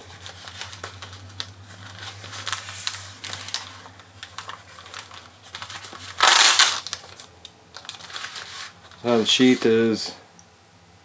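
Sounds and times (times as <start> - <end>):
clicks and rustling of sheath: 5.0 - 7.0.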